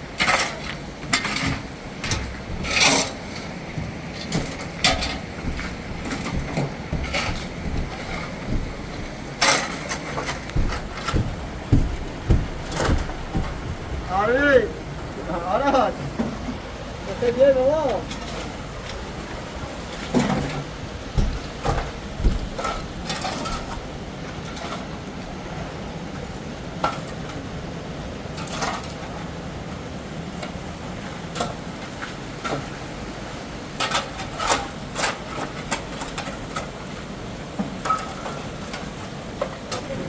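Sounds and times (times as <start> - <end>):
steady background noise: 0.0 - 40.0
knocks and clatters: 1.1 - 14.6, 20.0 - 24.9.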